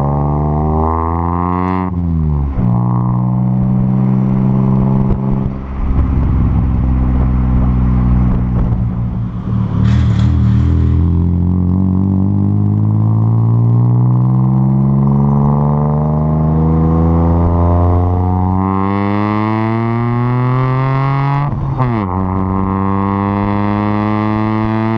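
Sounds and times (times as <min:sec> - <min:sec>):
car engine accelerating: 0:00.0 - 0:24.9.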